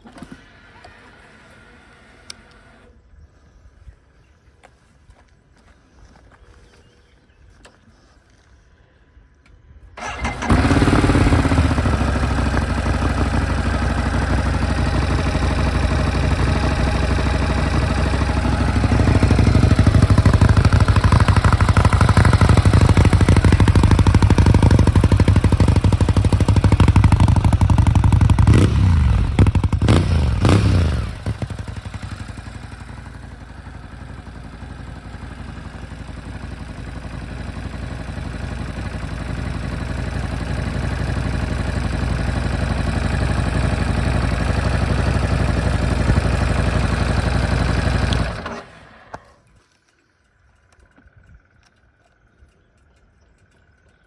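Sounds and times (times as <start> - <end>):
motorcycle engine starting and idling: 0.0 - 3.1, 9.8 - 54.0
motorcycle engine revving: 10.0 - 49.4.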